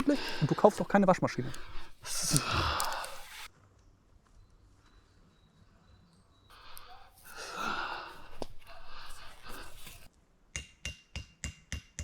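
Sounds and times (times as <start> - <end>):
rustling and scraping: 0.0 - 3.5, 6.5 - 10.1.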